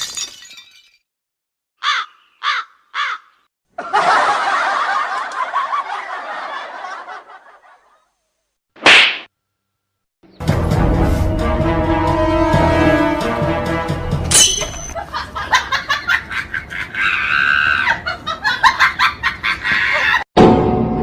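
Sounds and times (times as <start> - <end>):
crow cawing: 1.8 - 3.5
crowd laughing: 3.7 - 8.2, 14.9 - 20.3.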